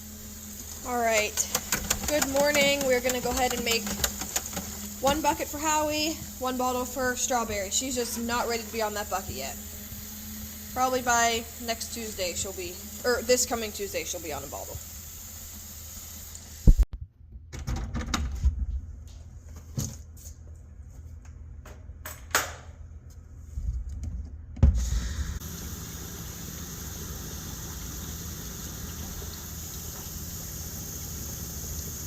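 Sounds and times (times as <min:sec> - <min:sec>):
water running: 0:00.0 - 0:16.8, 0:25.0 - 0:32.0
bucket and bottle clunking: 0:00.7 - 0:06.3.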